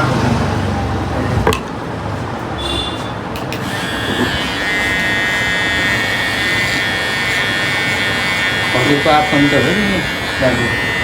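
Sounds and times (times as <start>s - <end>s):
electric hair clippers buzzing: 3.5s - 11.0s.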